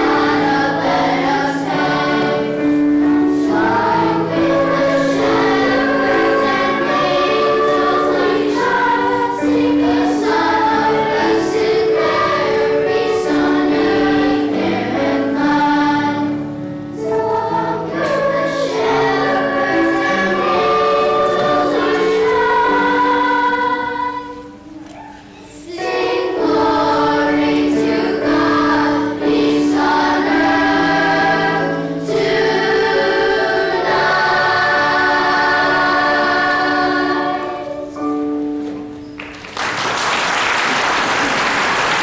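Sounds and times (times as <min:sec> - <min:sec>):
children's choir singing: 0:00.0 - 0:42.0.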